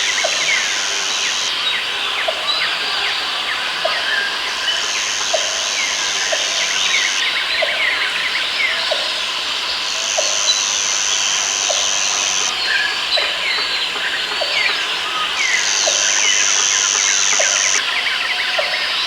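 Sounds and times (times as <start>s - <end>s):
steady high buzz: 9.2s - 12.6s, 15.1s - 17.8s
birds chirping and whistling: 15.4s - 17.8s.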